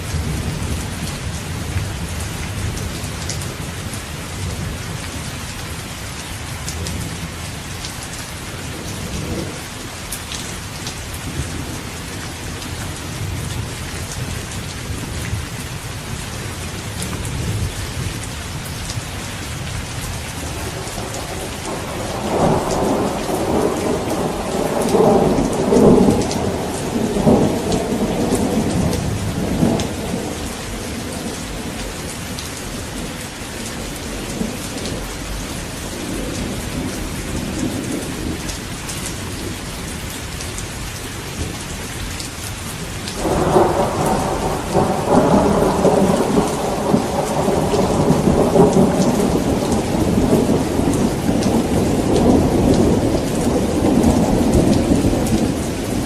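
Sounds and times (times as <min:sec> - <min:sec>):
steady rain: 0:00.0 - 0:56.0
thunder rumbling: 0:20.1 - 0:38.5, 0:43.2 - 0:56.0.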